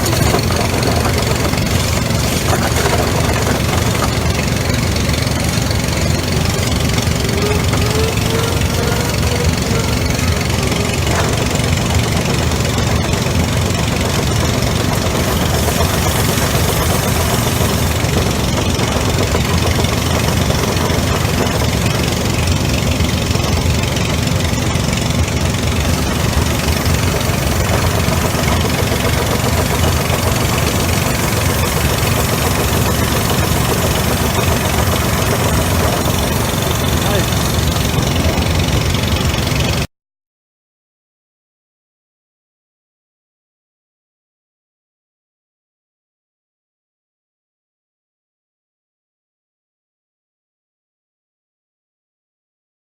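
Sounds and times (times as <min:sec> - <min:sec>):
motor droning: 0:00.0 - 0:39.8.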